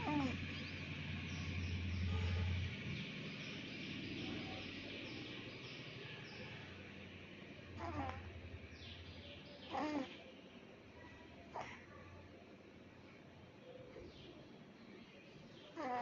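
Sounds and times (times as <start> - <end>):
baby snoring: 0.0 - 0.4, 7.8 - 8.2, 9.7 - 10.1, 15.8 - 16.0.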